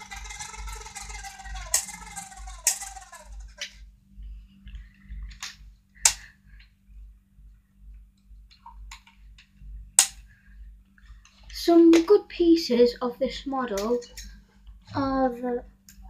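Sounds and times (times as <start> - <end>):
electric motor whine: 0.0 - 3.8.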